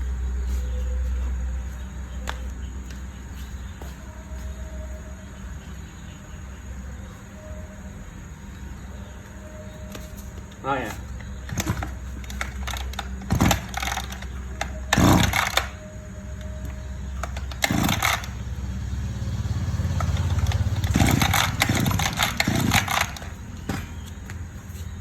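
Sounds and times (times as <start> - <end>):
small petrol engine running: 10.7 - 25.0.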